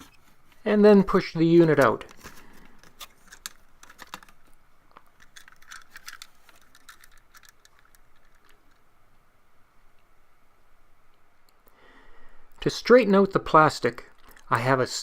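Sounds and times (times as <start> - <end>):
plastic clicking and rattling: 2.0 - 8.9.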